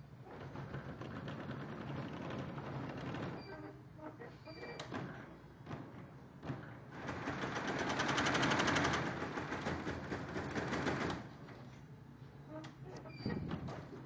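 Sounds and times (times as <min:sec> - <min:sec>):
embroidery machine rattling: 0:00.2 - 0:03.7, 0:04.8 - 0:11.4.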